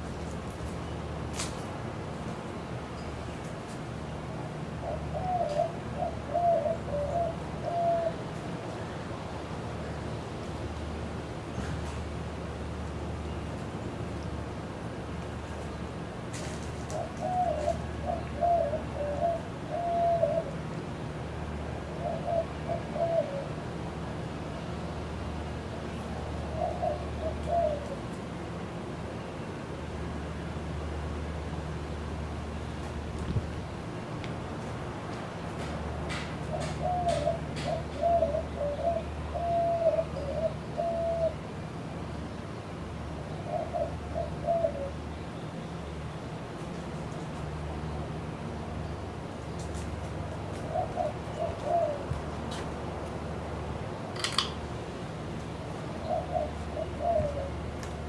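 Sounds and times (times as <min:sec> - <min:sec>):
ceiling fan humming: 0:00.0 - 0:58.0
dove cooing: 0:04.8 - 0:08.3, 0:16.8 - 0:20.6, 0:21.9 - 0:23.7, 0:26.3 - 0:28.2, 0:36.2 - 0:41.4, 0:43.4 - 0:45.0, 0:50.3 - 0:52.4, 0:55.8 - 0:57.9
bird calling: 0:36.5 - 0:41.4.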